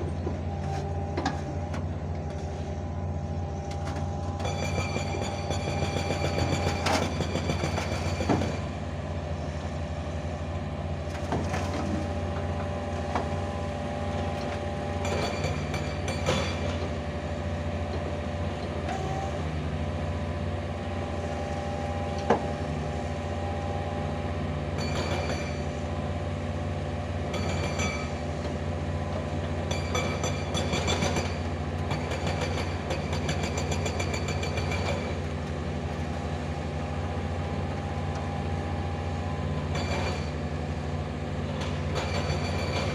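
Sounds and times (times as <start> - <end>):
excavator diesel engine running: 0.0 - 42.9
metal clanks from tracks: 3.5 - 8.9, 14.2 - 17.1, 24.7 - 26.0, 27.1 - 36.2, 39.4 - 42.9.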